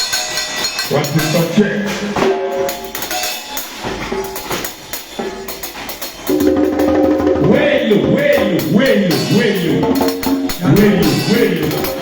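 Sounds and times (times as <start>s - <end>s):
drum and percussion hits: 0.0s - 12.0s
live band playing: 5.5s - 12.0s.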